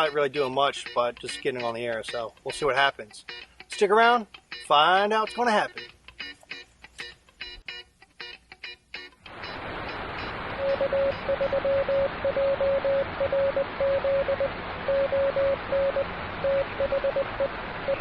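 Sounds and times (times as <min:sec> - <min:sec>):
radio static hiss: 0:09.3 - 0:18.0
morse code beeping tone: 0:10.6 - 0:18.0.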